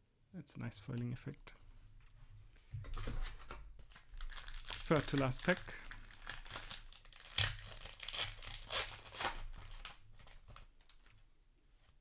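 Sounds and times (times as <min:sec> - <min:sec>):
foil wrapper tearing and crinkling: 0:03.8 - 0:11.1.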